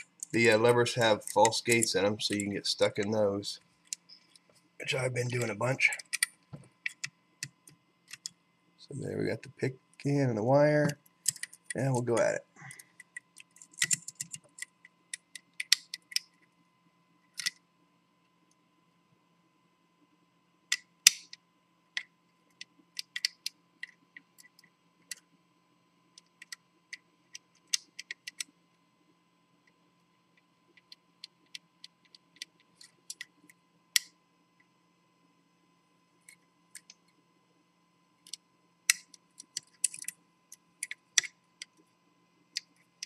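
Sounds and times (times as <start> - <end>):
faint steady hum: 0.0 - 43.0
lock picks clicking and scraping: 11.2 - 11.8, 13.0 - 16.4, 17.3 - 17.6, 23.0 - 24.7, 38.2 - 40.2.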